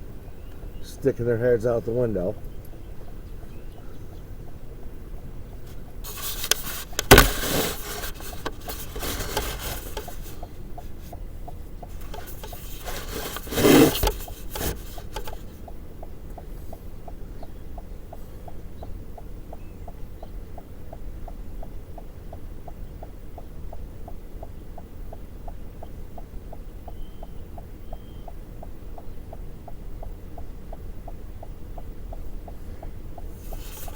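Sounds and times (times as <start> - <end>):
rubbing against microphone: 5.7 - 11.2, 11.9 - 15.6, 33.4 - 33.9
heavy bumps: 6.1 - 10.4.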